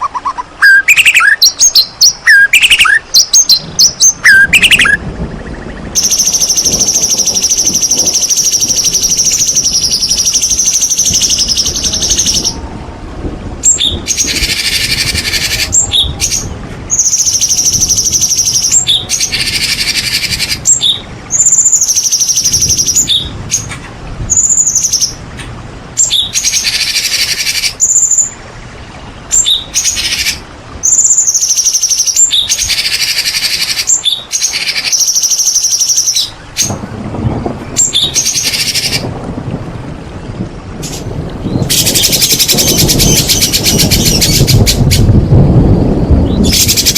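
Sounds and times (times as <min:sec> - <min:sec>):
bird singing rapid high phrases: 0:00.0 - 0:12.6, 0:13.6 - 0:23.7, 0:29.1 - 0:36.8, 0:37.6 - 0:39.1, 0:40.9 - 0:45.4, 0:46.1 - 0:46.9
low rumble: 0:03.5 - 0:19.4, 0:36.3 - 0:46.9.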